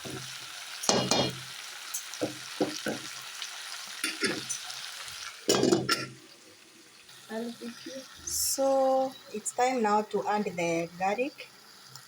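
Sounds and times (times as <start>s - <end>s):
chicken sizzling in a pot: 0.0s - 12.0s
utensil clattering against pot: 5.5s - 6.1s.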